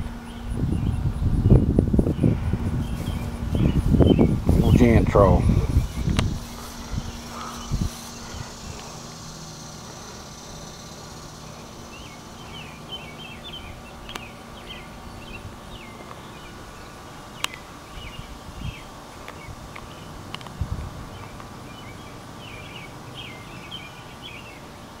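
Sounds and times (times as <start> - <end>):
small birds chirping: 0.0 - 25.0
steady low hum: 0.0 - 25.0
sharp clicks: 14.1 - 14.3.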